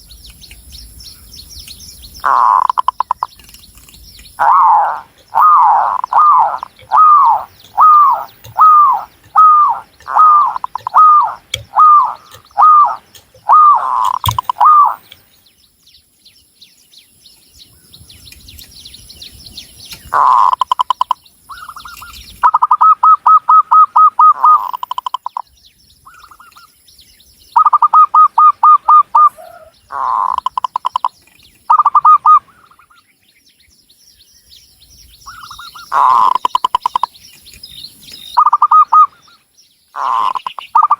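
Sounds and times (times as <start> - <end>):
small birds chirping: 0.0 - 40.9
dove cooing: 2.2 - 3.3, 4.4 - 15.2, 20.1 - 25.4, 27.6 - 31.1, 31.7 - 32.5, 35.3 - 37.1, 38.4 - 39.2, 40.0 - 40.9.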